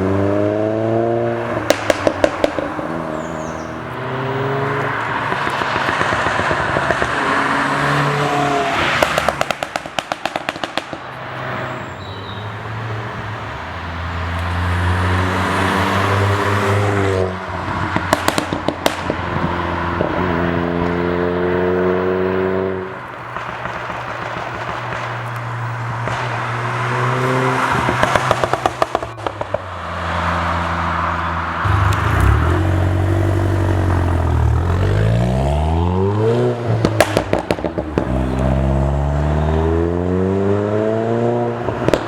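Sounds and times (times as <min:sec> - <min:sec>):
exhaust crackling pops: 0:01.6 - 0:03.5, 0:09.0 - 0:11.1, 0:17.9 - 0:20.2, 0:23.1 - 0:26.8, 0:27.8 - 0:29.8, 0:31.7 - 0:35.4, 0:36.7 - 0:38.7, 0:41.6 - 0:42.0
car engine revving: 0:12.6 - 0:42.0.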